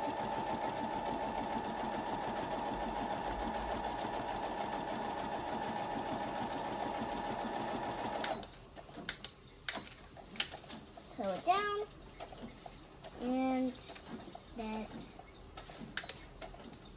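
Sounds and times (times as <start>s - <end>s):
sewing machine stitching: 0.0s - 8.4s.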